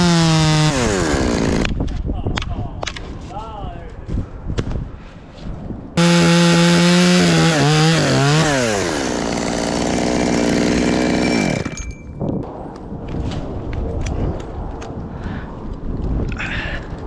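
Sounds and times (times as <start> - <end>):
chainsaw cutting wood: 0.0 - 1.8, 6.0 - 11.8.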